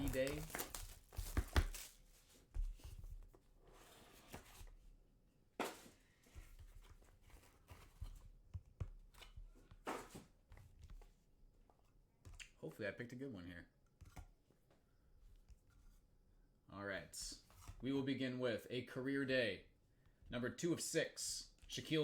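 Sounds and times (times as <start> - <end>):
cardboard and plastic rustling: 0.0 - 3.4.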